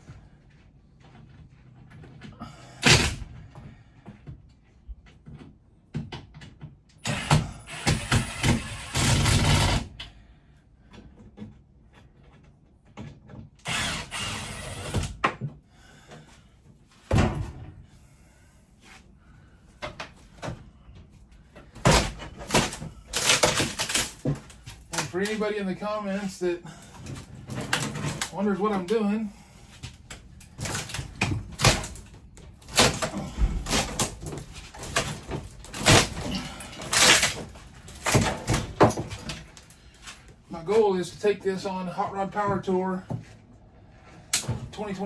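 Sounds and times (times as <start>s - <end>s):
panels knocking and banging: 17.0s - 17.9s, 19.8s - 43.3s
rough scraping and rattling: 21.6s - 42.8s.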